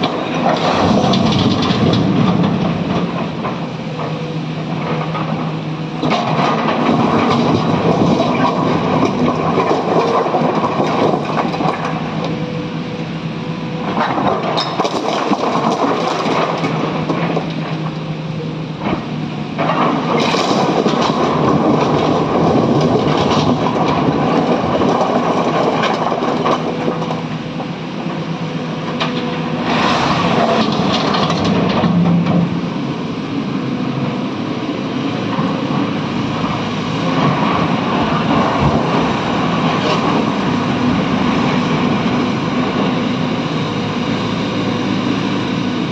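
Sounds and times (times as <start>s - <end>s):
excavator diesel engine under load: 0.0s - 45.9s
clatter: 14.0s - 17.6s, 19.6s - 27.2s, 28.9s - 32.5s.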